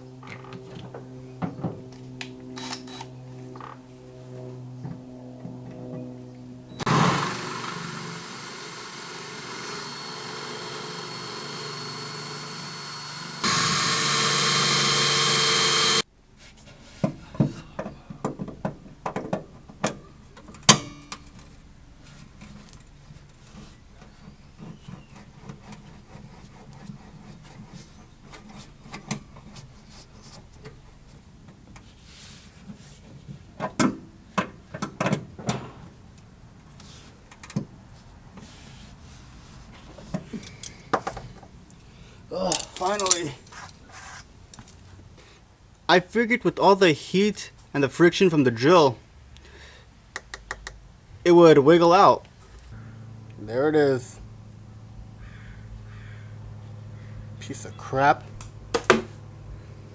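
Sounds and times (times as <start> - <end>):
power drill on steel bolt: 2.6 - 3.1, 6.7 - 16.0, 42.5 - 43.3
hand tools clicking and knocking: 42.5 - 43.6.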